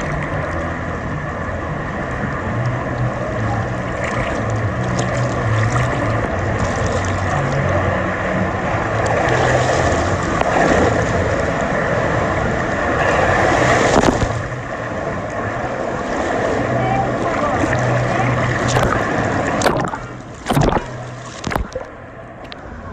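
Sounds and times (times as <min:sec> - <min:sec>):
rushing churning water: 0:00.0 - 0:22.9
steady low hum: 0:00.0 - 0:22.9.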